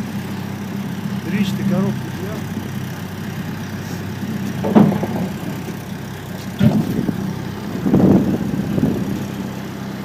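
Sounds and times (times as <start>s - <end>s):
tractor engine idling: 0.0s - 10.0s
short knocks: 4.5s - 7.1s.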